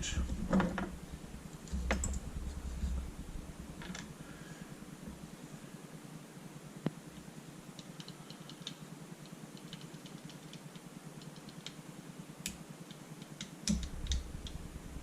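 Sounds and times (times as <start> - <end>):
steady low hum: 0.0 - 15.0
light irregular clicking: 7.8 - 11.8, 12.4 - 14.6.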